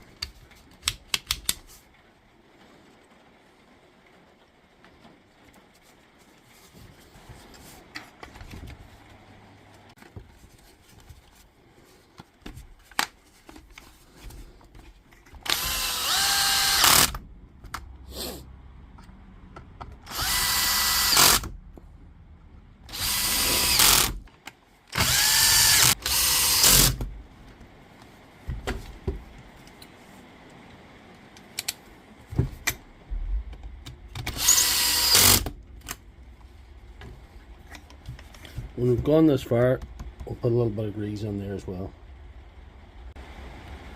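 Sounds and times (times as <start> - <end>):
power drill whining: 15.4 - 17.2, 20.0 - 21.5, 22.9 - 24.2, 25.0 - 27.0, 34.3 - 35.5.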